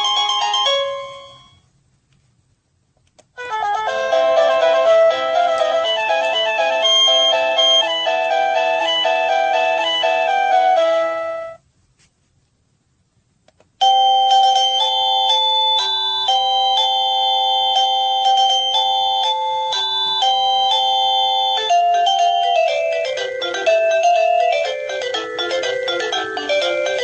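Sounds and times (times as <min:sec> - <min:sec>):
doorbell chime melody: 0:00.0 - 0:01.6, 0:03.9 - 0:11.6, 0:13.8 - 0:27.0.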